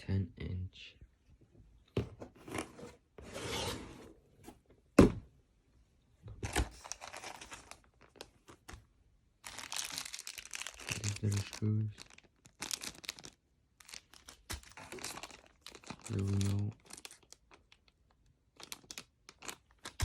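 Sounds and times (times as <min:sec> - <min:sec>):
sharp thump: 0:05.0 - 0:05.2
packaging rustling: 0:06.4 - 0:17.8.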